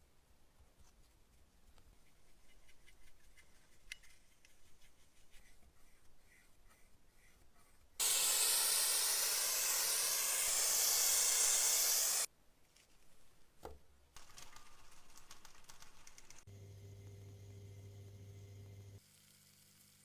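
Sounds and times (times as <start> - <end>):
aerosol spray can hissing: 8.0 - 12.3.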